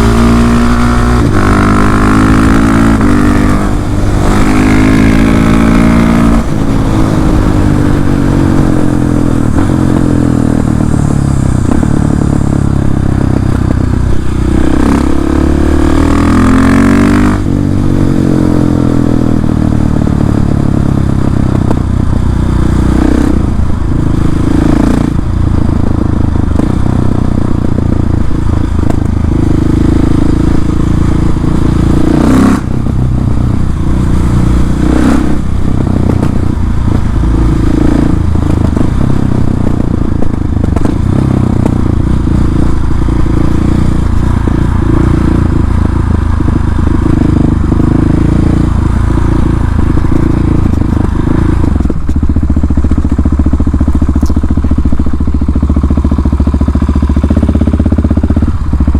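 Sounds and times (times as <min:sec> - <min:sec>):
motorcycle engine revving: 0:00.0 - 0:58.9
exhaust pops and crackles: 0:25.2 - 0:29.6, 0:35.4 - 0:58.9.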